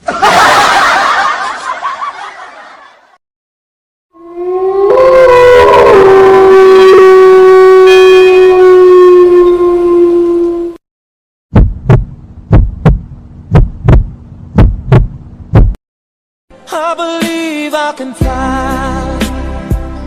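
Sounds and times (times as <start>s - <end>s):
long horn-like blast: 4.2s - 10.8s.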